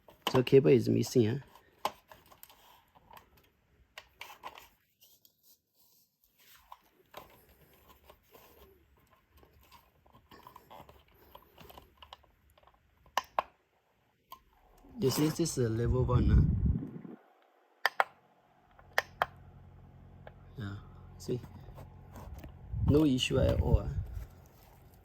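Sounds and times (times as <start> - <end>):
fan clicks and rustling: 21.2 - 25.0.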